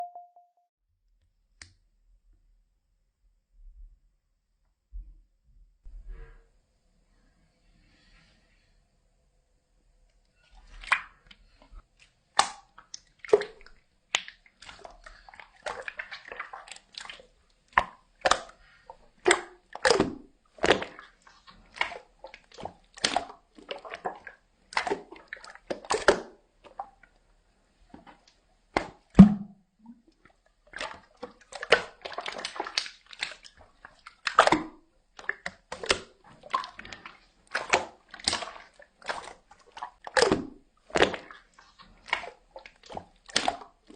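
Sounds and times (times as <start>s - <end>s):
slime squelching and popping: 10.7s - 27.0s, 28.0s - 43.9s.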